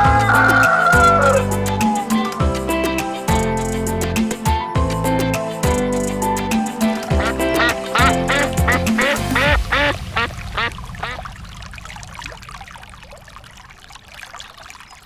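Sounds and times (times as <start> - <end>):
background music: 0.0 - 11.2
animal calling rapidly: 7.2 - 11.2.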